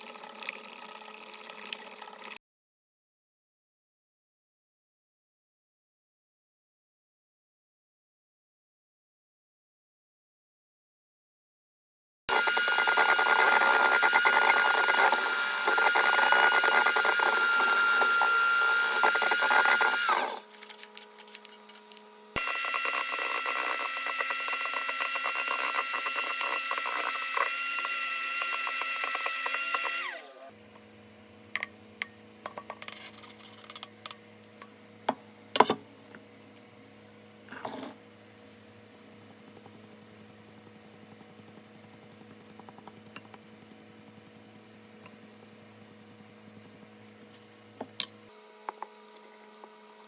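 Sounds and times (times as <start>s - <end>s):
electric mixer whining: 12.3s - 30.6s.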